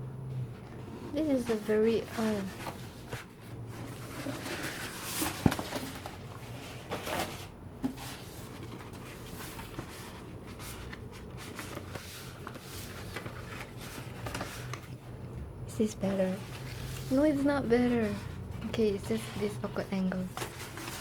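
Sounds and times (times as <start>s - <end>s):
paper posters rustling: 0.4s - 21.0s.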